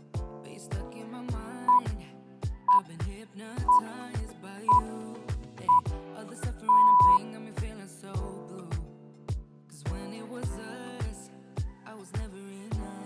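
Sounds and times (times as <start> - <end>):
r and b music with steady beat: 0.0 - 13.0
timer short high beeps: 6.7 - 7.2.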